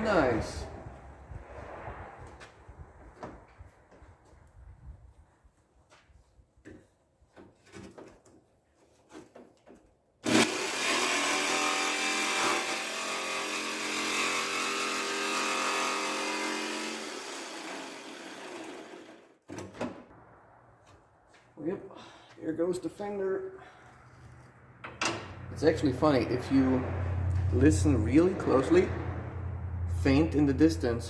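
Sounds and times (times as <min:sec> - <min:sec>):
angle grinder cutting steel: 0:10.3 - 0:19.2.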